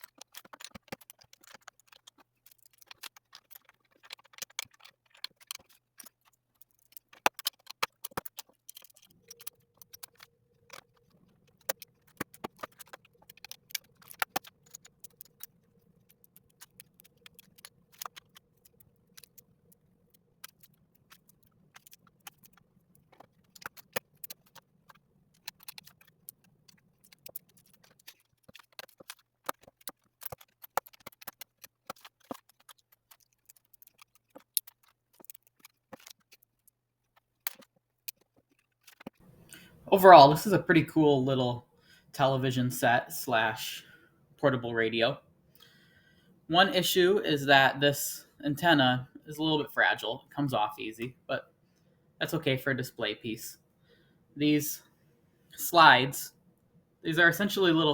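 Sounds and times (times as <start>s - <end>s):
plastic bricks clicking: 0.0s - 39.6s.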